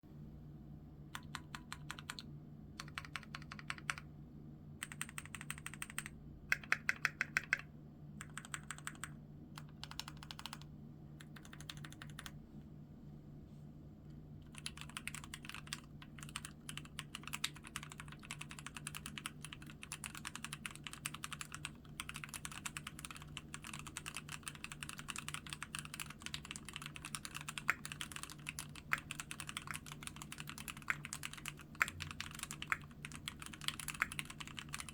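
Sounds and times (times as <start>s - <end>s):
mechanical keyboard typing: 1.1s - 2.2s, 2.8s - 4.0s, 4.8s - 12.4s, 14.5s - 34.9s.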